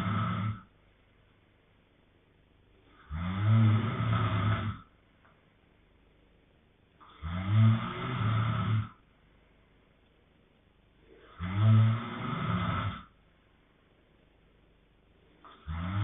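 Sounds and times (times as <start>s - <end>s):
man snoring: 0.0s - 0.7s, 2.9s - 4.9s, 7.0s - 9.0s, 11.2s - 13.2s, 15.4s - 16.0s.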